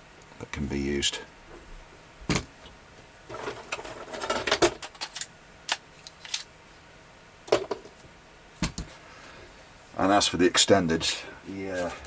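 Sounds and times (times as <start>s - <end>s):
pistol parts scraping and rattling: 3.3s - 6.5s.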